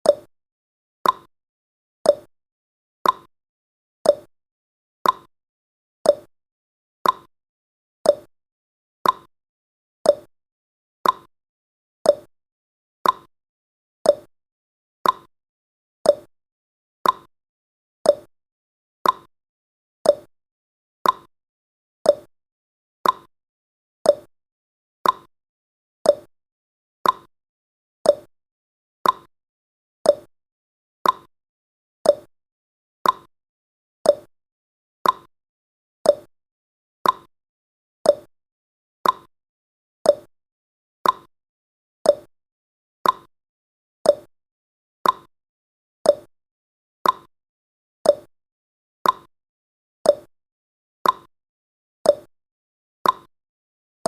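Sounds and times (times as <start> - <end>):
clock-like timer ticking: 1.0 - 1.3, 2.1 - 2.3, 3.0 - 3.3, 4.1 - 4.3, 5.0 - 5.3, 6.1 - 6.3, 7.0 - 7.3, 8.1 - 8.3, 9.0 - 9.3, 10.1 - 10.3, 11.0 - 11.3, 12.1 - 12.3, 13.0 - 13.3, 14.1 - 14.3, 15.0 - 15.3, 16.1 - 16.3, 17.0 - 17.3, 18.1 - 18.3, 19.0 - 19.3, 20.1 - 20.3, 21.0 - 21.3, 22.1 - 22.3, 23.0 - 23.3, 24.1 - 24.3, 25.0 - 25.3, 26.1 - 26.3, 27.0 - 27.3, 28.1 - 28.3, 29.0 - 29.3, 30.1 - 30.3, 31.0 - 31.3, 32.1 - 32.3, 33.0 - 33.3, 34.1 - 34.3, 35.0 - 35.3, 36.0 - 36.3, 37.0 - 37.3, 38.1 - 38.3, 39.0 - 39.3, 40.1 - 40.3, 41.0 - 41.3, 42.1 - 42.3, 43.0 - 43.3, 44.1 - 44.3, 45.0 - 45.3, 46.1 - 46.3, 47.0 - 47.3, 48.1 - 48.3, 49.0 - 49.3, 50.1 - 50.3, 51.0 - 51.3, 52.1 - 52.3, 53.0 - 53.3.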